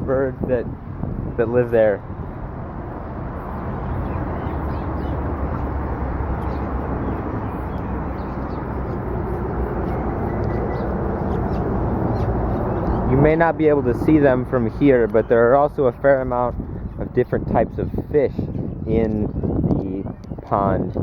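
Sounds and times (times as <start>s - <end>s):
faint bird chirps: 9.8s - 13.1s.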